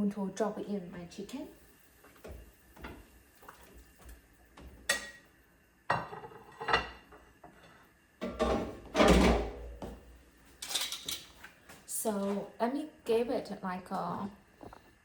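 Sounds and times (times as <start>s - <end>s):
pot and utensils clattering: 4.8s - 5.2s, 5.9s - 7.2s, 8.2s - 9.7s, 10.6s - 11.4s.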